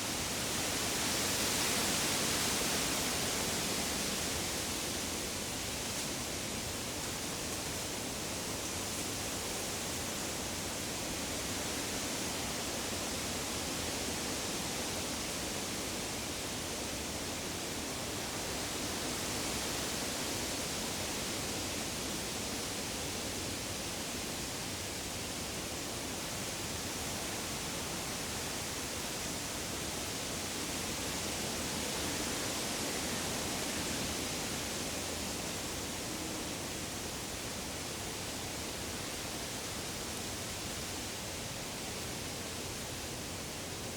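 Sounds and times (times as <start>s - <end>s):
woodland rushing hiss: 0.0s - 43.9s.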